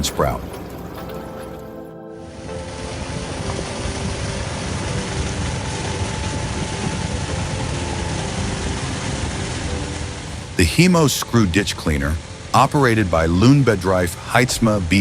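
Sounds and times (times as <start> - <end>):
heavy machine engine running: 3.4 - 12.8.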